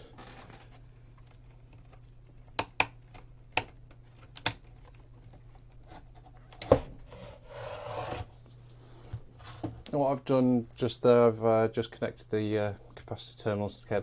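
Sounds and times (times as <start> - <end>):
metal hardware clicks and taps: 2.5 - 3.8.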